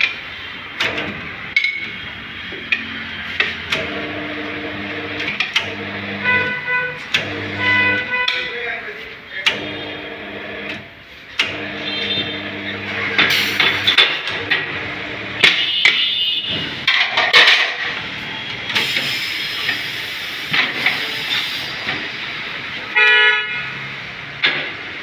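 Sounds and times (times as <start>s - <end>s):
metal tools knocking and clanking: 1.5s - 2.0s, 16.8s - 17.9s.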